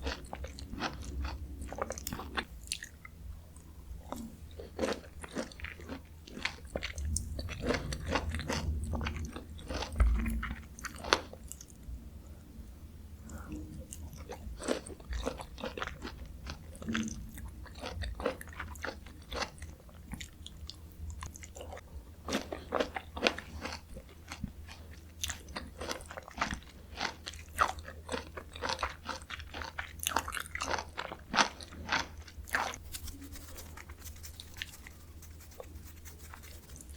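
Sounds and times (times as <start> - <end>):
chewing and biting fruit: 13.9 - 36.9.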